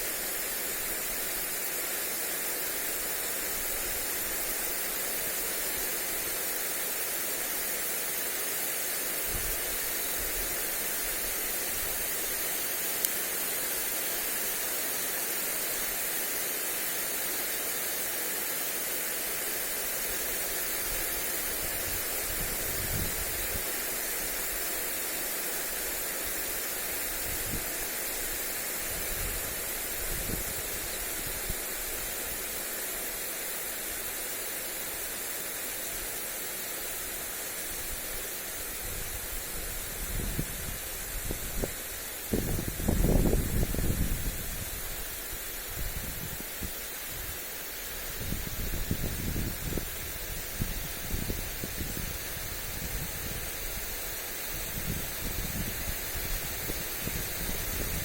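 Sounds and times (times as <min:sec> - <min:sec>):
sprinkler spraying water: 0:00.0 - 0:58.0
wind gusts on microphone: 0:21.6 - 0:23.7, 0:28.9 - 0:31.6, 0:38.8 - 0:47.4, 0:48.0 - 0:58.0.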